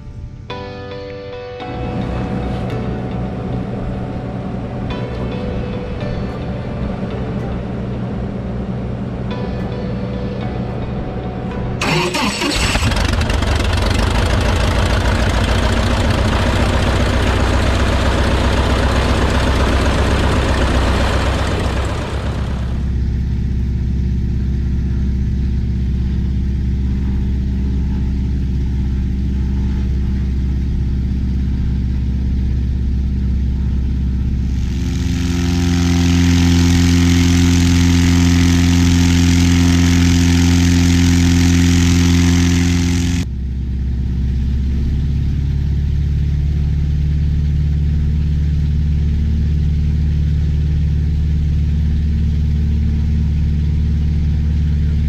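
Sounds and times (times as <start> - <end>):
aircraft engine running: 1.6 - 55.0.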